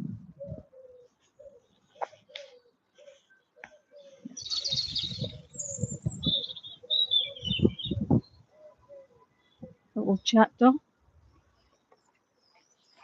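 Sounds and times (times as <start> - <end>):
low rumbling on microphone: 0.0 - 0.6, 4.6 - 6.7, 7.4 - 8.4
low cooing bird calls: 0.0 - 9.8
small bird chirping: 0.5 - 10.4.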